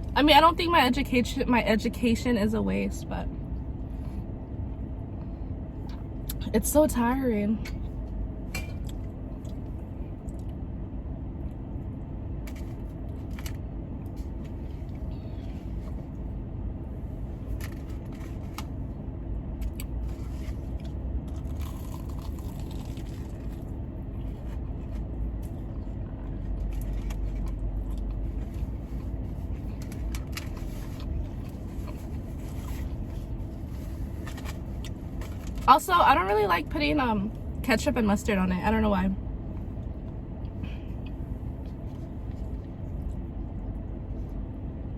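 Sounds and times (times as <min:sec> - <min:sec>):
car air conditioning hum: 0:00.0 - 0:44.9
person eating: 0:19.8 - 0:23.6.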